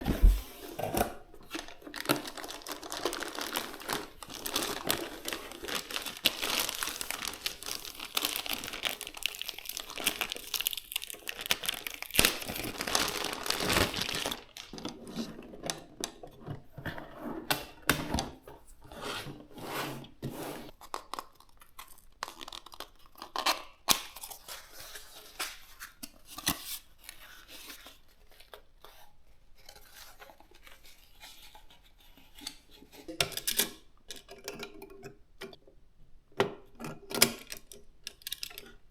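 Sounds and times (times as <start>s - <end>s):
packaging crinkling and tearing: 1.4s - 15.3s, 20.7s - 25.7s.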